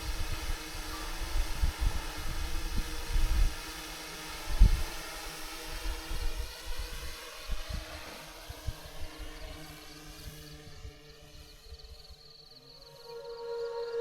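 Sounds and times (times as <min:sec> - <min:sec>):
wind gusting against microphone: 0:00.0 - 0:03.8, 0:04.4 - 0:11.0.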